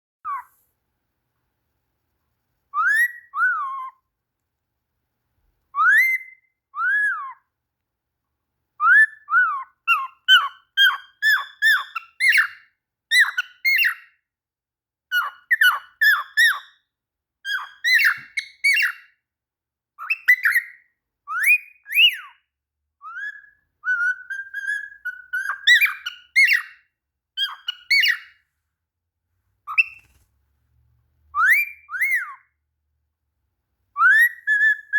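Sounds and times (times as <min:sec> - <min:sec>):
cockatiel whistling and chirping: 0:00.3 - 0:00.5, 0:02.7 - 0:04.0, 0:05.7 - 0:07.4, 0:08.8 - 0:14.2, 0:15.1 - 0:16.8, 0:17.5 - 0:19.2, 0:20.0 - 0:28.4, 0:29.7 - 0:30.2, 0:31.3 - 0:32.5, 0:34.0 - 0:34.9.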